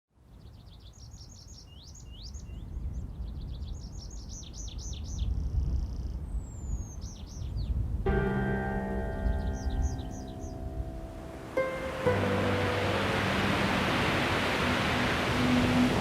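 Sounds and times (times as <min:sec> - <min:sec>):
songbirds chirping and whistling: 0:00.3 - 0:07.8, 0:09.0 - 0:10.8
music: 0:08.1 - 0:16.0.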